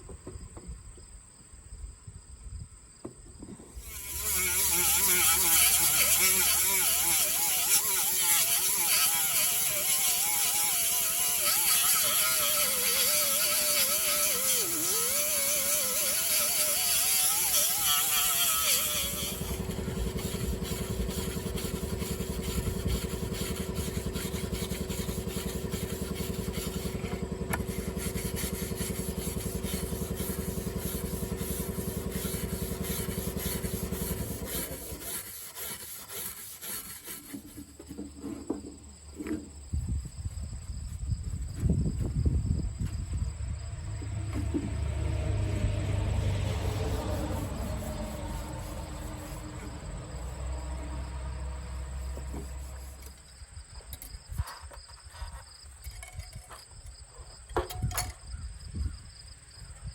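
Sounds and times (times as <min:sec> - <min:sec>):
welding arc buzzing: 0:03.8 - 0:35.2.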